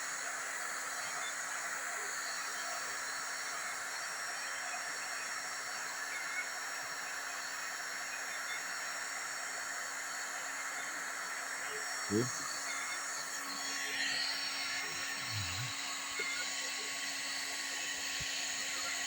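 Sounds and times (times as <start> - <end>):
hot-air welding gun hissing: 13.2 - 19.0
low blower hum: 13.3 - 19.0.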